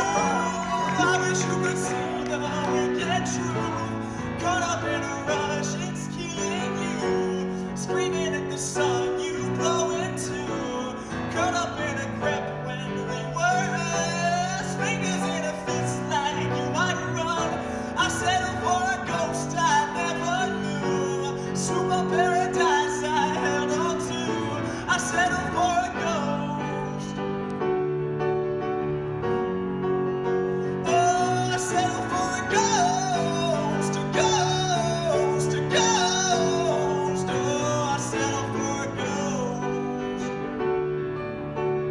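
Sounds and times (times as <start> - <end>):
pop song with vocals: 0.0 - 28.0, 30.4 - 41.9.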